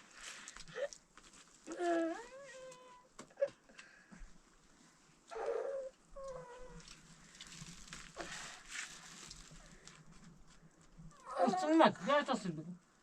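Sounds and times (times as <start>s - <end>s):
faint rustling: 3.8s - 11.3s.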